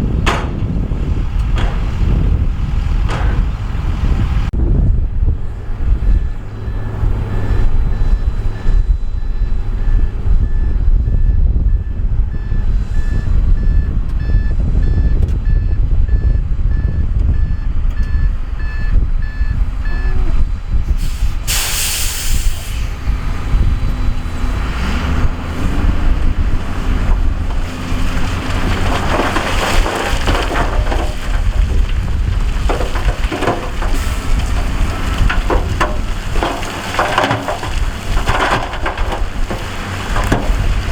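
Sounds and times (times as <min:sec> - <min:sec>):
diesel truck engine running: 0:00.0 - 0:40.9
air brakes hissing: 0:21.0 - 0:23.0
rock and gravel sliding: 0:24.5 - 0:40.9.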